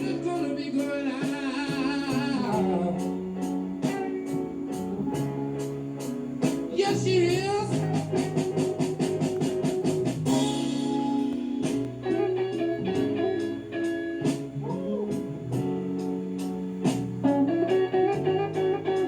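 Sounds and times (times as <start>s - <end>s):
person singing: 0.0s - 5.7s, 6.7s - 15.2s
plucked guitar: 0.0s - 19.0s
strummed guitar notes: 0.0s - 19.0s.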